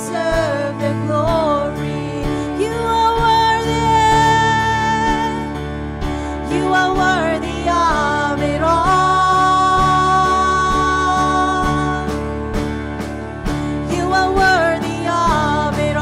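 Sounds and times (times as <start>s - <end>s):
worship band music: 0.0s - 16.0s.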